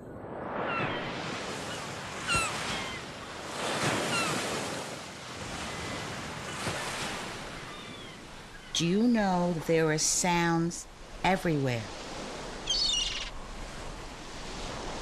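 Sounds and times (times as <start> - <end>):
ocean surf washing: 0.0 - 15.0
high falling chirps: 12.6 - 13.4.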